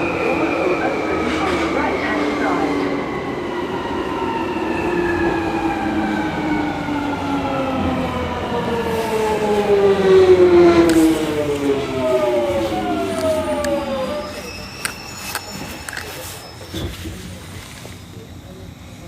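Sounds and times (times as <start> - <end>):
wheels rumbling: 8.1 - 19.0.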